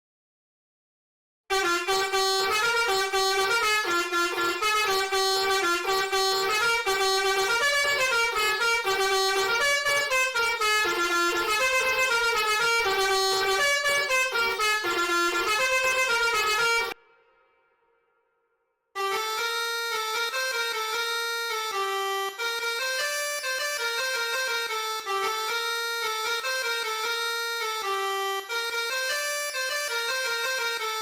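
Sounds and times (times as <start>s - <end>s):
bus air horn playing a tune: 1.5s - 17.6s, 19.0s - 27.1s.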